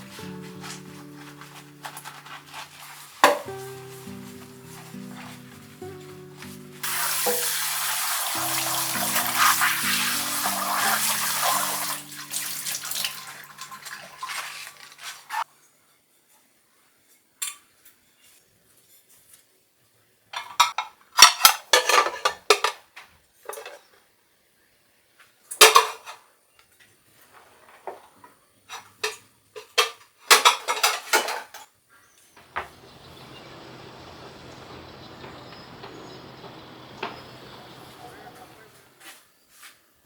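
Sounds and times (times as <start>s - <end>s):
cutlery clinking and clattering: 12.0s - 15.4s, 20.4s - 22.8s, 25.6s - 26.2s, 28.8s - 31.7s
steady hiss with low hum: 32.4s - 39.0s.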